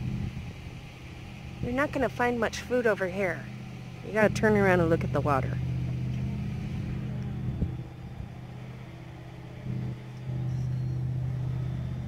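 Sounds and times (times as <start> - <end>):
low engine hum: 0.0 - 12.0.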